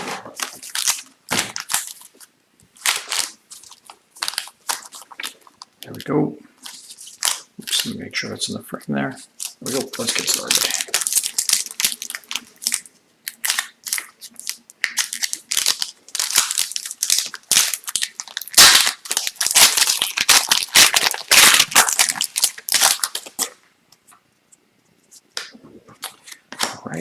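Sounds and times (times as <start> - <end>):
card packaging being torn open: 6.7 - 8.0, 9.4 - 23.5.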